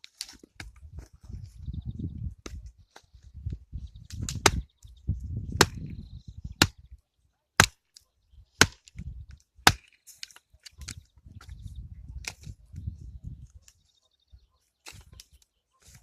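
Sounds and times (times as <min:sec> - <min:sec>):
axe chopping wood: 0:04.2 - 0:04.7, 0:05.5 - 0:05.9, 0:06.6 - 0:06.8, 0:07.6 - 0:07.8, 0:08.6 - 0:09.0, 0:09.6 - 0:10.4.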